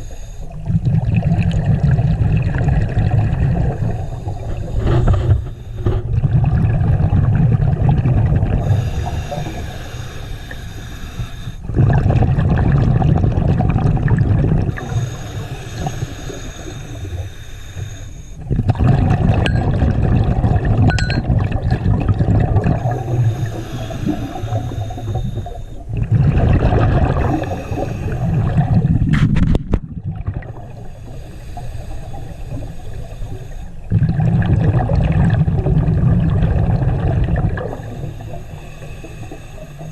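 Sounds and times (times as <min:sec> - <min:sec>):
exhaled bubbles rumbling: 0:00.0 - 0:09.8, 0:11.6 - 0:17.3, 0:18.4 - 0:39.9
regulator inhale with whistle: 0:08.6 - 0:11.6, 0:14.8 - 0:18.4, 0:22.8 - 0:25.9, 0:27.4 - 0:28.4, 0:37.7 - 0:39.9.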